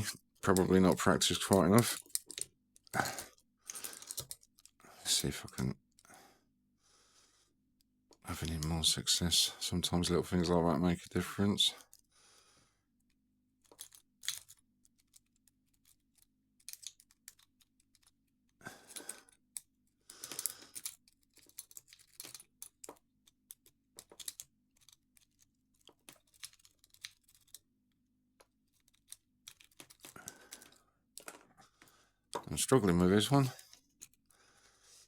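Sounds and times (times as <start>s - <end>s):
lock pick raking in padlock: 28.7s - 31.3s.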